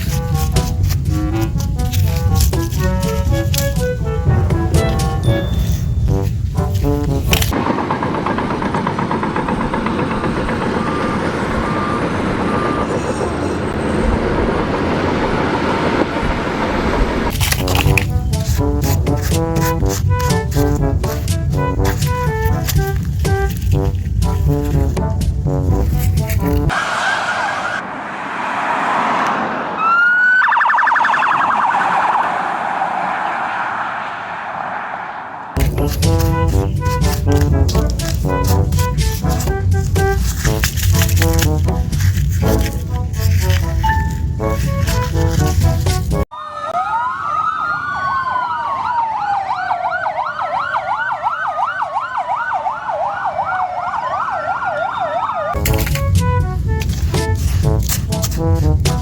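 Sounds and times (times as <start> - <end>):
music: 0.0 - 7.5, 17.4 - 26.7, 35.6 - 46.2, 55.6 - 59.0
siren warbling: 9.4 - 17.3, 26.7 - 40.1, 46.3 - 56.9.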